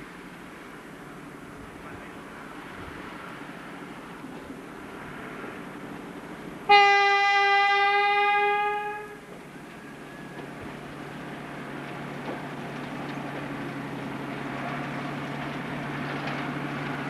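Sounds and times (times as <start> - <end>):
locomotive horn tone: 6.7 - 9.3.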